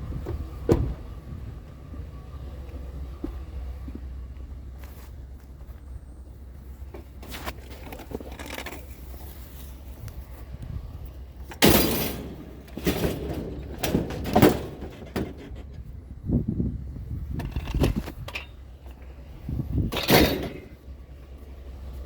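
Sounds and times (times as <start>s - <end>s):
steady low rumble: 0.0s - 22.0s
knocks and clunks: 0.1s - 4.1s, 11.4s - 16.0s, 19.8s - 20.9s.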